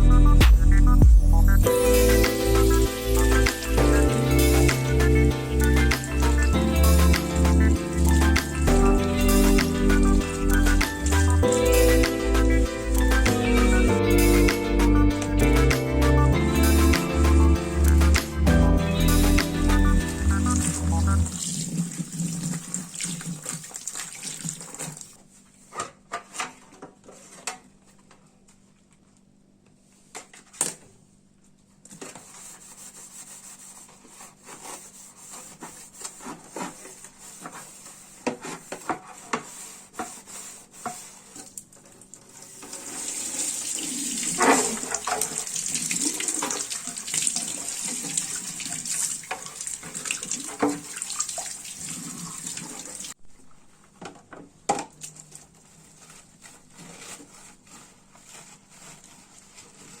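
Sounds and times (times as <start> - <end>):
water running from a tap: 20.5 - 25.1, 42.4 - 53.2.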